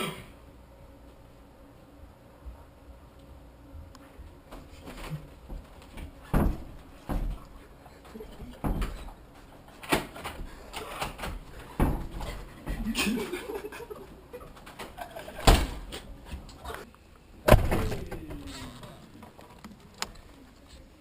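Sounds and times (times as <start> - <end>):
objects knocking and thumping: 4.5 - 13.4, 17.4 - 19.6.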